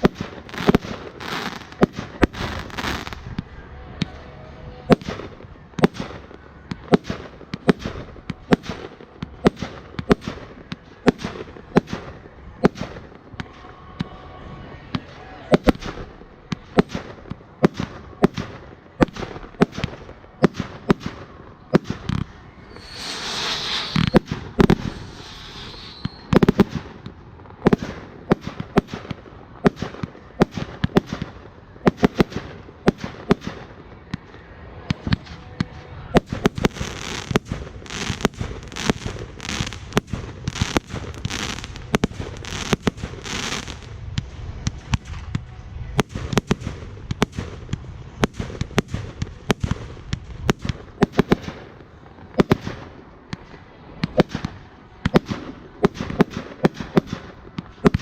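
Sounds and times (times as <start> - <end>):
fireworks hissing: 0.0 - 3.4, 22.5 - 27.0, 36.2 - 45.3
fireworks bangs and pops: 0.0 - 4.2, 4.8 - 14.1, 14.9 - 58.0.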